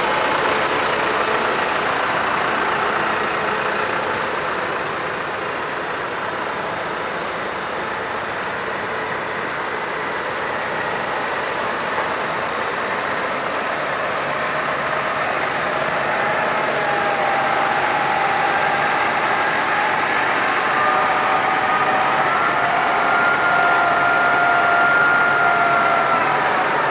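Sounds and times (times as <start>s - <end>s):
farm machine engine running: 0.0s - 20.8s.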